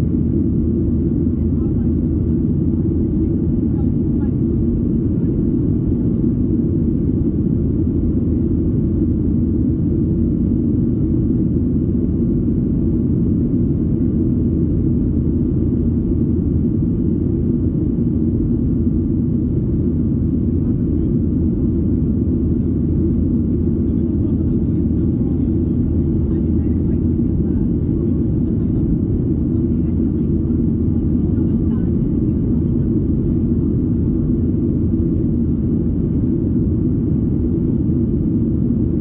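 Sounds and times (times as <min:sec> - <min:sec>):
airplane engines rumbling in cabin: 0:00.0 - 0:39.0.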